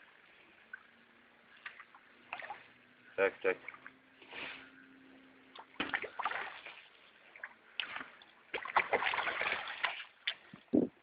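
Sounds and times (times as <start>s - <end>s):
fish thrashing in water: 1.5s - 2.8s, 5.6s - 10.5s.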